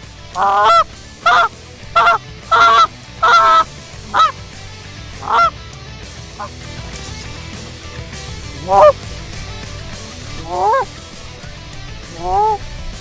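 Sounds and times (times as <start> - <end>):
goose call honks: 0.3 - 4.4, 5.2 - 5.5, 8.6 - 9.0, 10.4 - 10.9, 12.2 - 12.6.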